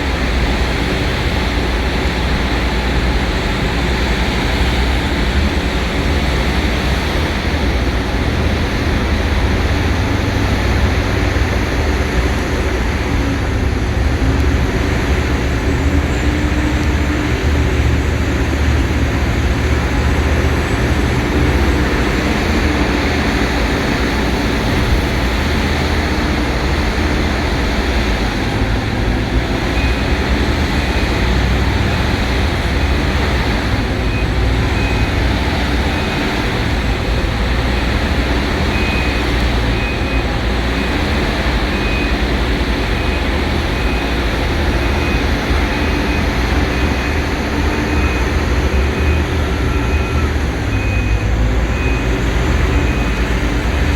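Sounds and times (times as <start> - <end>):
heavy machinery engine rumbling: 0.0 - 53.9
backup alarm beeping: 28.9 - 53.9.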